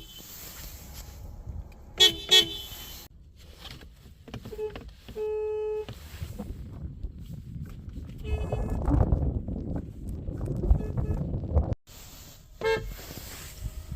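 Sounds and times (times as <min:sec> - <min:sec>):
car horns honking: 0:00.0 - 0:03.1, 0:04.4 - 0:06.0, 0:12.6 - 0:13.9.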